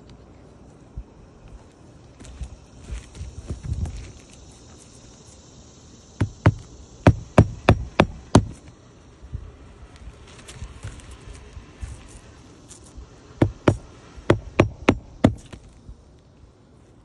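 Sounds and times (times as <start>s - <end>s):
hammer striking roof: 6.2s - 8.6s, 13.4s - 15.6s.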